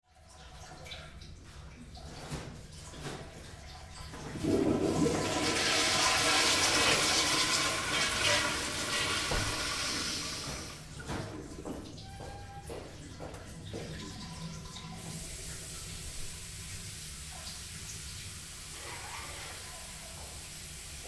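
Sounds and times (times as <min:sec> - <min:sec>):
toilet flushing: 0:00.1 - 0:21.0.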